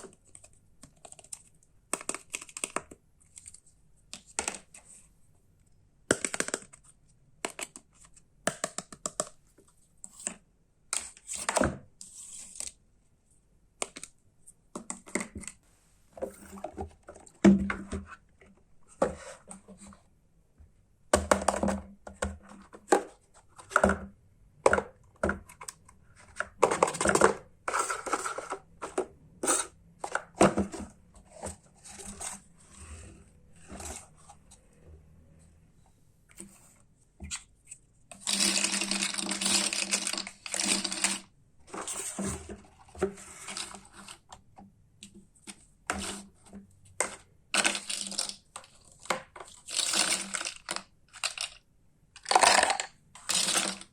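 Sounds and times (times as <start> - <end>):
plastic parts rattling: 38.1 - 42.2, 47.0 - 51.6, 52.2 - 53.9
plastic toy parts clicking: 49.4 - 51.6, 52.2 - 53.9.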